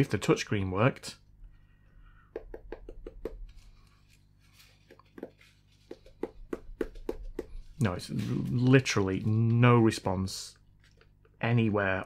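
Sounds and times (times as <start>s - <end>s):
fingertips tapping on glass screen: 4.8s - 7.7s.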